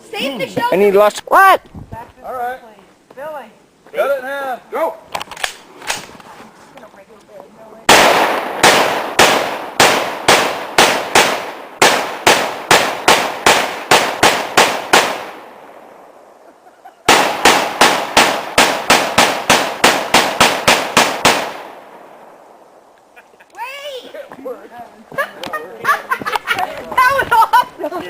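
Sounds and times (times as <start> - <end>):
rapid gunshots with echo: 7.9 - 15.4, 17.1 - 21.7.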